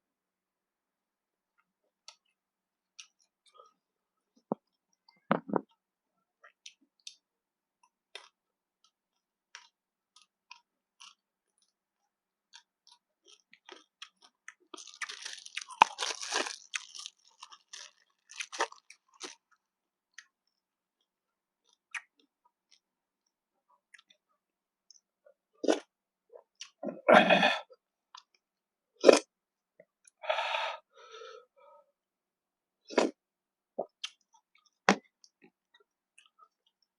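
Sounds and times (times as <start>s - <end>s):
crunchy chewing: 12.5s - 20.4s.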